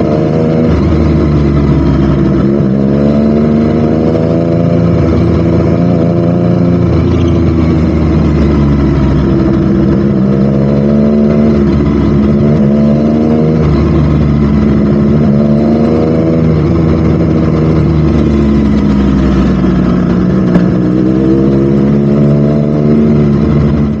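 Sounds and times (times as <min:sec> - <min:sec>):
motorcycle engine revving: 0:00.0 - 0:24.0.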